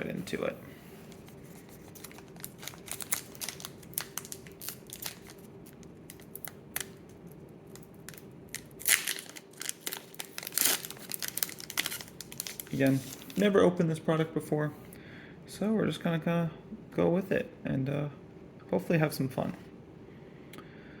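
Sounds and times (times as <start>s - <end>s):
card pack wrapper crinkling and tearing: 1.2s - 13.4s.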